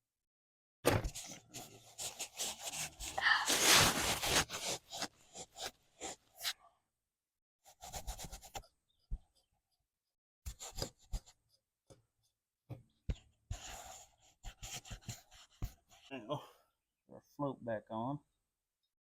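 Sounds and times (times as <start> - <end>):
wire brush scrubbing: 1.9 - 6.5.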